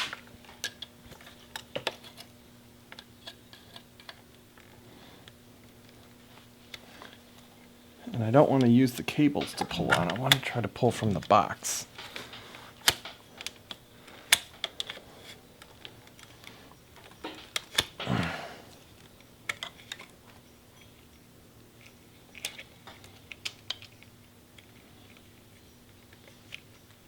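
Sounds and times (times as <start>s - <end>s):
faint steady hum: 0.0s - 27.0s
plastic and metal parts clicking: 8.6s - 18.1s, 19.0s - 20.1s, 21.8s - 27.0s.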